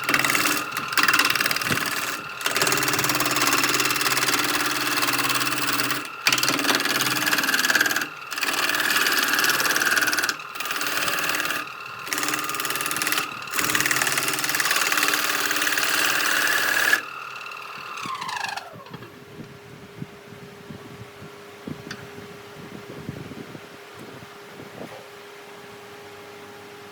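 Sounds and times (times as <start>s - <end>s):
power tool cutting wood: 0.0s - 19.2s.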